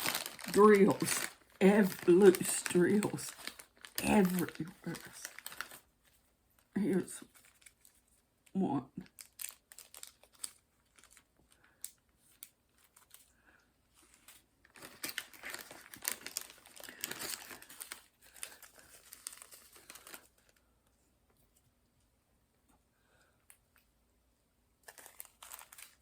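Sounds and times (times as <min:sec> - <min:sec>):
plastic bags crinkling: 0:00.0 - 0:08.2, 0:09.0 - 0:13.4, 0:14.0 - 0:20.6, 0:24.8 - 0:26.0.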